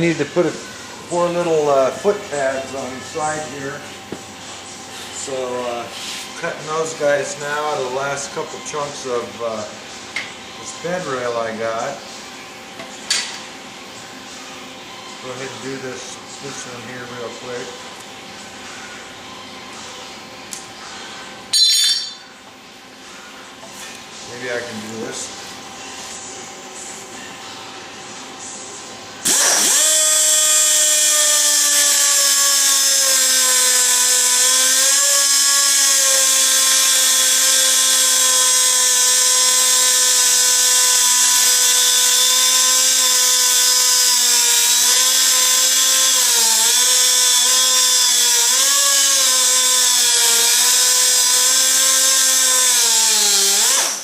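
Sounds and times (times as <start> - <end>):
power tool cutting steel: 29.2 - 54.0.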